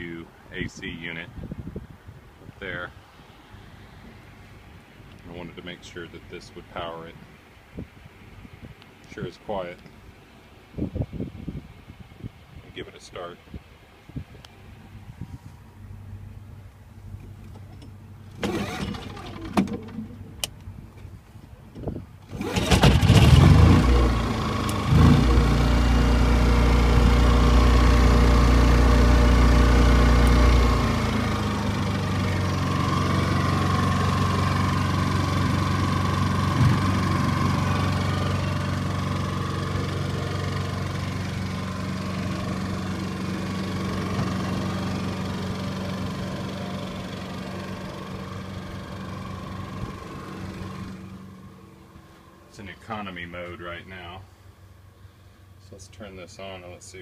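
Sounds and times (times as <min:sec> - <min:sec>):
generator engine running: 0:17.2 - 0:20.9, 0:22.2 - 0:55.6.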